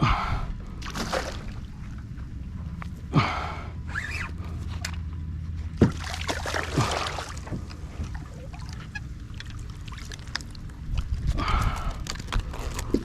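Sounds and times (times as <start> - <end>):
steady low hum: 0.0 - 13.0
water splashing against kayak: 5.8 - 11.2.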